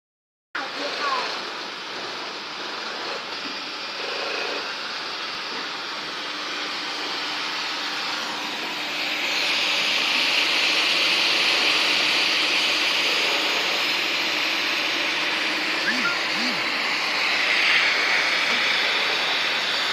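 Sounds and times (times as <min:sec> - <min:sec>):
industrial machinery running: 0:13.2 - 0:19.9.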